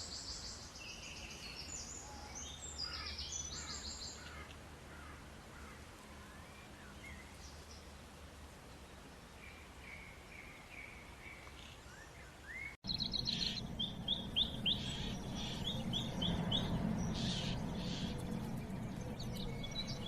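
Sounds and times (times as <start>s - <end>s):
birds chirping: 9.4s - 20.0s
low rumble of wind or surf: 12.8s - 20.0s.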